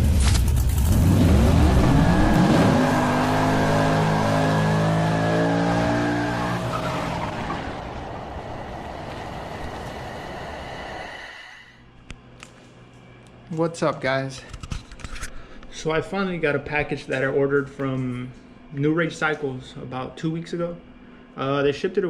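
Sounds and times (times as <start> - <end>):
motorcycle engine revving: 0.0 - 9.9.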